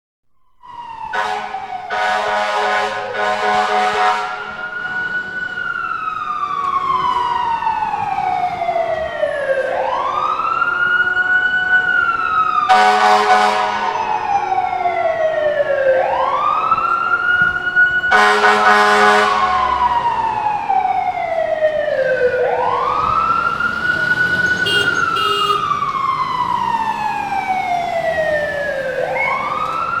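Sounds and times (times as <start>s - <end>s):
fire truck siren wailing: 0.5s - 30.0s
horn blasts: 1.1s - 4.7s, 12.7s - 14.1s, 17.4s - 19.8s, 24.2s - 25.9s.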